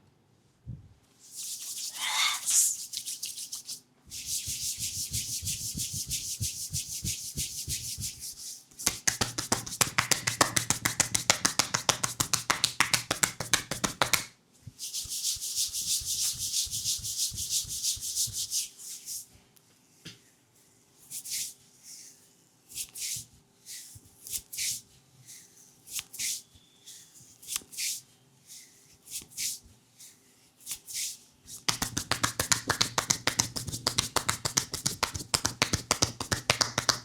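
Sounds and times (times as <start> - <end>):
hands rubbing skin: 1.2 - 19.3, 27.3 - 37.0
fast tapping on leg: 4.4 - 8.2, 8.8 - 14.3, 31.7 - 37.0.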